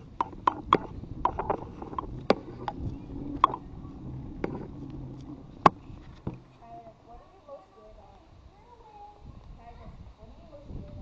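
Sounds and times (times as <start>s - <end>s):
low rumble: 0.0s - 7.2s.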